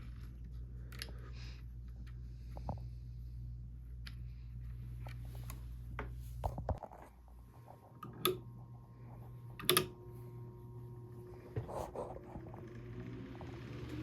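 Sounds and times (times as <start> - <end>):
electric fan motor humming: 0.0 - 14.0.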